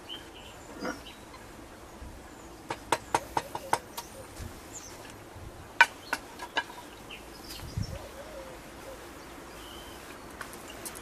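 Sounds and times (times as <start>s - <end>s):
faint bird chirps: 6.0s - 11.0s.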